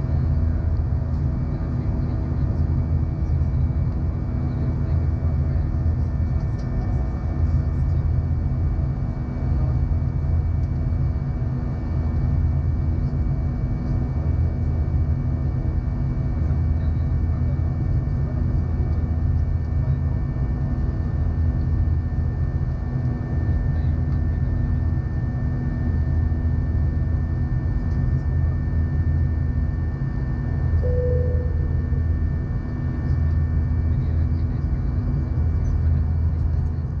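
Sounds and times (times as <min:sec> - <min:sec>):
aircraft cabin engine rumble: 0:00.0 - 0:37.0
faint steady whines: 0:00.0 - 0:37.0
brief single tone: 0:30.8 - 0:32.4.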